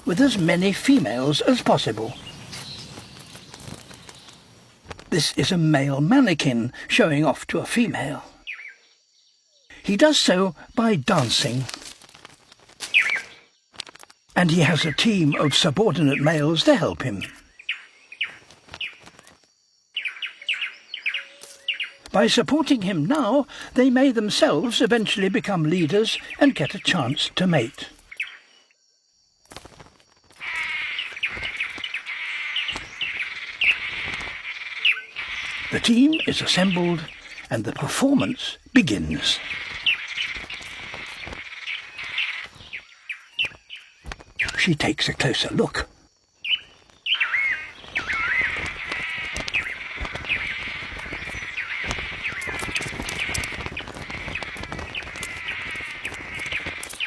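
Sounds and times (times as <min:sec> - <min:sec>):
falling bird chirps: 0:00.0 - 0:05.8, 0:10.5 - 0:23.7, 0:29.5 - 0:57.0
insect drone: 0:00.0 - 0:57.0
whistled bird calls: 0:20.0 - 0:22.1, 0:46.4 - 0:57.0.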